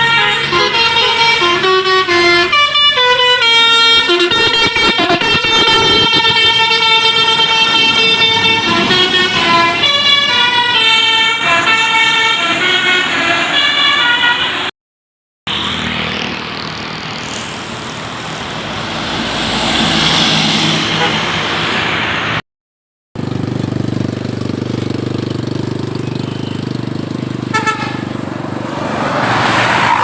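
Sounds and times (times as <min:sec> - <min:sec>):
multi-tone musical bus horn: 0:00.0 - 0:14.7, 0:20.9 - 0:21.6, 0:24.6 - 0:28.4
vehicle engine and road noise: 0:00.0 - 0:14.7, 0:15.5 - 0:22.4, 0:23.2 - 0:30.0.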